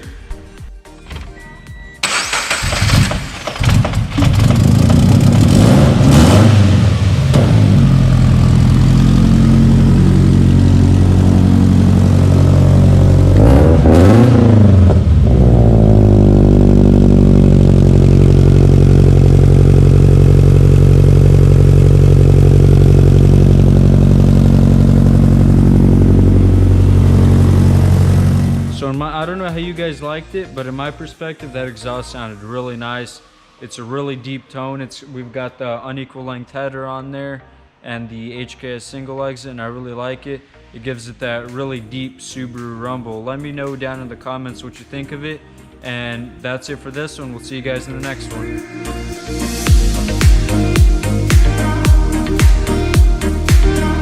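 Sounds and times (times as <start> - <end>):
car engine revving and idling: 2.1 - 29.0, 48.1 - 54.0.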